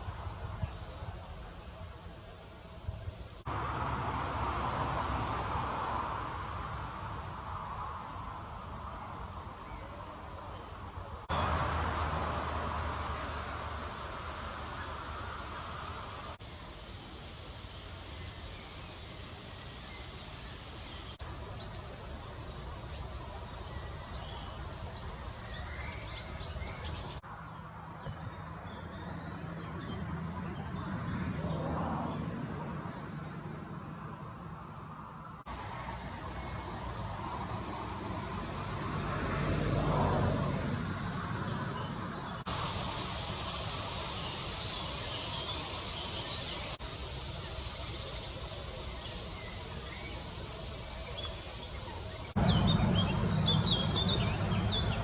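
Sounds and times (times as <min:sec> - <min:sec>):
low rushing noise: 0:00.0 - 0:09.4, 0:42.4 - 0:55.0
outdoor background noise: 0:00.0 - 0:55.0
small birds chirping: 0:08.8 - 0:35.4, 0:41.2 - 0:55.0.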